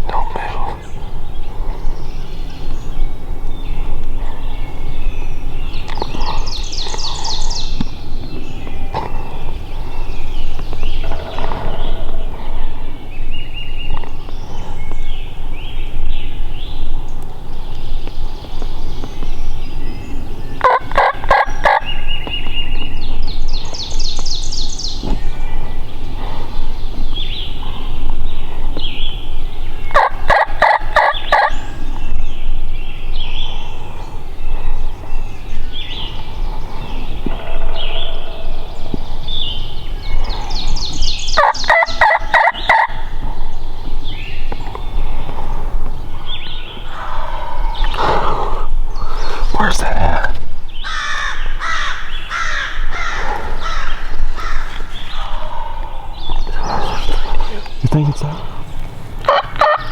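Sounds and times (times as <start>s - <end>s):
songbirds chirping: 0.0s - 59.9s
turkey gobbling: 20.6s - 22.0s, 29.9s - 31.6s, 36.4s - 39.2s, 41.2s - 43.5s, 50.9s - 57.8s, 58.4s - 59.9s.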